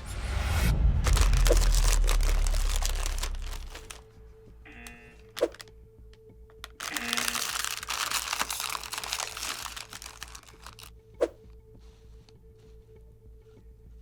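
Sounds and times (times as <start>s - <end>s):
snack bag crinkling: 1.1s - 4.0s, 5.3s - 5.7s, 6.5s - 10.9s.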